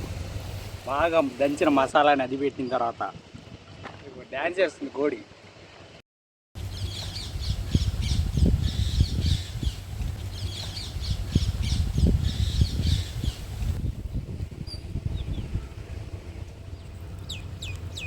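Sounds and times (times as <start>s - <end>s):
steady low rumble: 0.0s - 1.7s, 6.6s - 18.0s
birds squawking: 6.6s - 13.7s.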